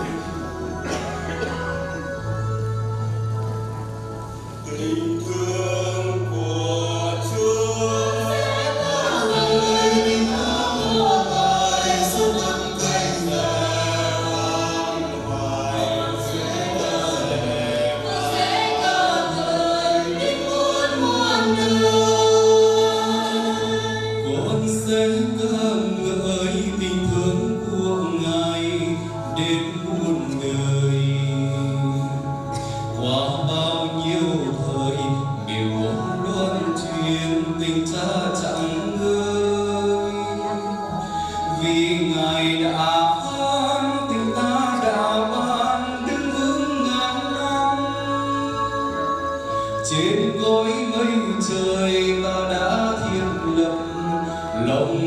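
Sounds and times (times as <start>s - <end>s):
choir singing a hymn: 0.0s - 55.0s
held bass notes: 0.0s - 55.0s.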